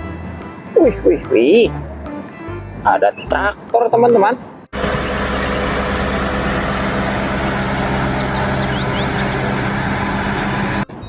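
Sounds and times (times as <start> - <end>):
tractor engine idling: 4.8 - 11.0.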